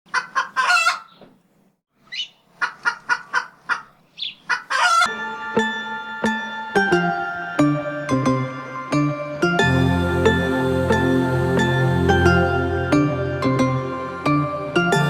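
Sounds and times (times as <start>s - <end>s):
chicken clucking: 0.1s - 1.3s, 2.1s - 5.1s
gentle music with sustained notes: 5.1s - 15.0s.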